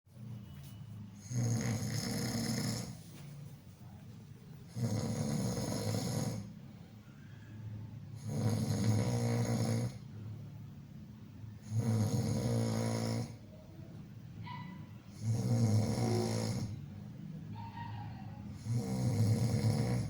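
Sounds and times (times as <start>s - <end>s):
loud snoring: 1.2s - 3.0s, 4.7s - 6.6s, 8.2s - 10.1s, 11.6s - 13.4s, 15.1s - 16.8s, 18.5s - 20.0s.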